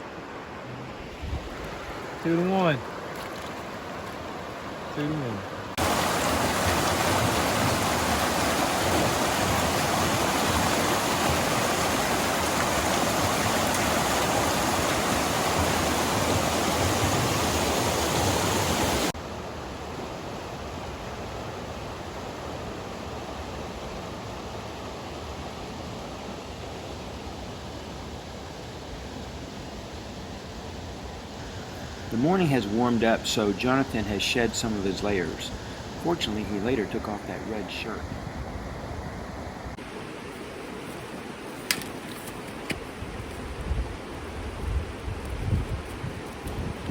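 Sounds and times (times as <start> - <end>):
river water rushing over rapids: 0.0 - 25.0.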